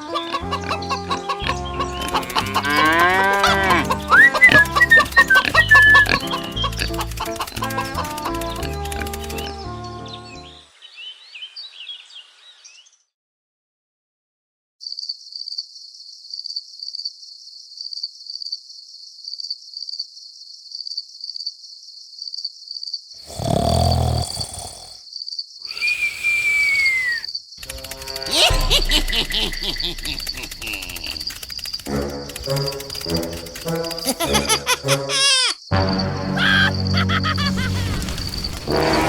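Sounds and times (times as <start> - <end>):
crickets chirping: 23.3 - 39.0
hiss with falling whistle: 25.7 - 27.3
loud deep burst: 37.4 - 39.0.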